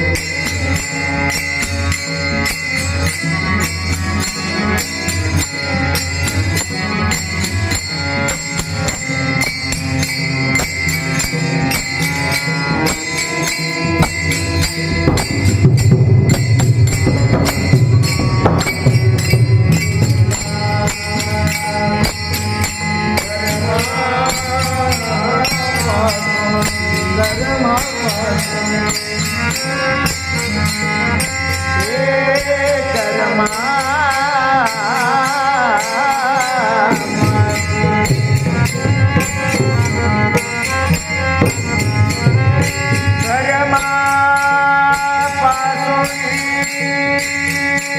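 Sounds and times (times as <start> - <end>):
jingling percussion: 0.0 - 47.9
person singing ornamented notes: 0.0 - 47.9
drum playing: 12.7 - 23.4.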